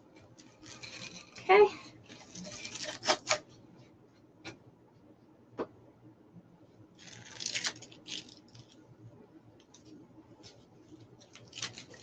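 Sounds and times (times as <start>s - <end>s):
crinkly mesh rustling: 0.4s - 3.5s, 7.0s - 8.8s, 9.7s - 12.0s.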